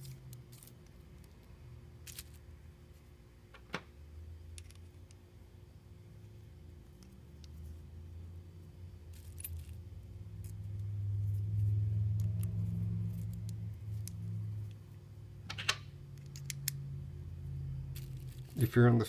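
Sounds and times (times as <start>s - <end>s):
small metal parts clinking: 0.0s - 2.4s, 4.5s - 5.2s, 9.1s - 14.8s, 15.5s - 16.8s, 17.9s - 19.0s
low hum: 4.0s - 18.8s.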